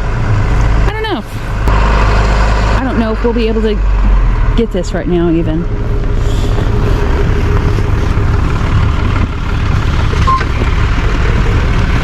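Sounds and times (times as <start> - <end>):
truck engine rumbling: 0.0 - 12.0
short beep: 10.2 - 10.6.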